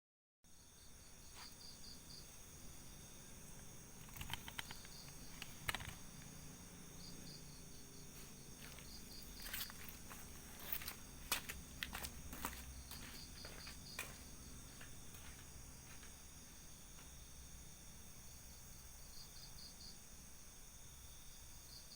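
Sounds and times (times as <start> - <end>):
crickets chirping: 0.5 - 21.9
high-pitched insect drone: 0.6 - 16.8
sharp clicks: 4.0 - 6.3.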